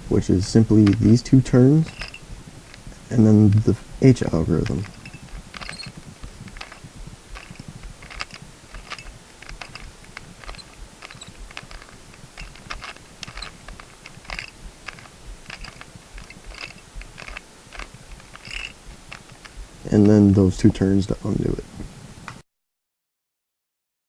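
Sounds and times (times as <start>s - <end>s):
puzzle cube plastic clicks: 0.6s - 2.9s, 3.6s - 20.2s.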